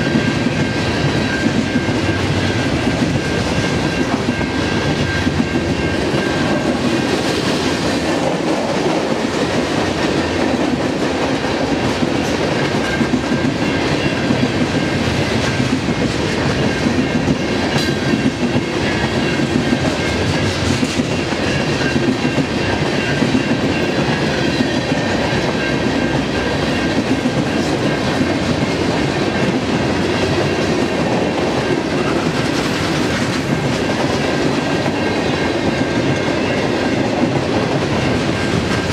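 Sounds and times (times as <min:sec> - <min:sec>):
freight train wheels on rails: 0:00.0 - 0:38.9.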